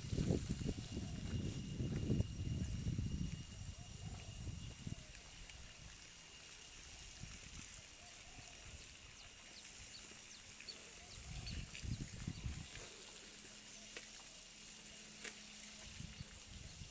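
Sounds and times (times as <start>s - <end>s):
high insect drone: 0.0s - 16.9s.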